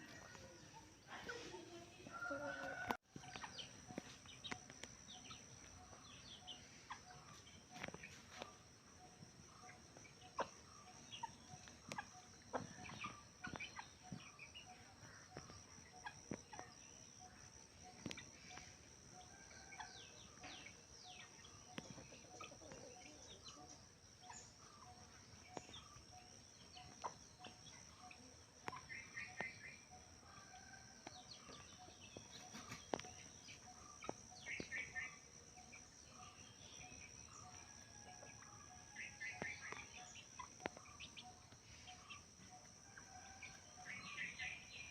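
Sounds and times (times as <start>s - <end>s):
chickens clucking: 0.0s - 8.6s, 9.2s - 16.8s, 17.9s - 36.4s.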